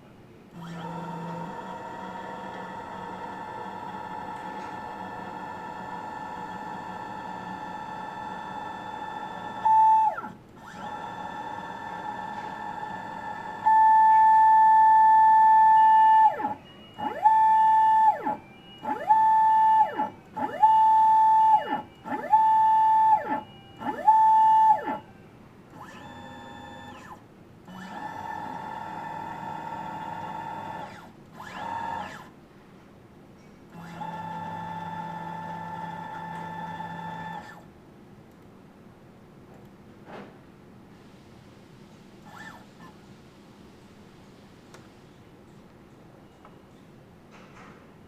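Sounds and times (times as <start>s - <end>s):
motor whining at high pitch: 0.6s - 25.1s, 25.8s - 32.3s, 33.7s - 37.6s, 42.3s - 42.9s.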